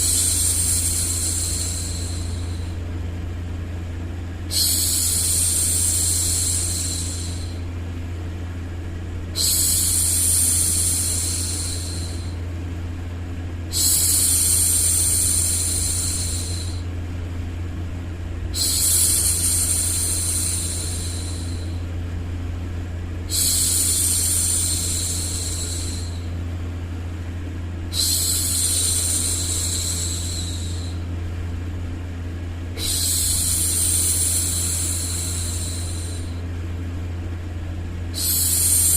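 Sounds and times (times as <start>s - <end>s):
white noise hum: 0.0s - 38.9s
woman shushing: 9.4s - 12.4s, 32.8s - 36.4s, 38.2s - 38.9s.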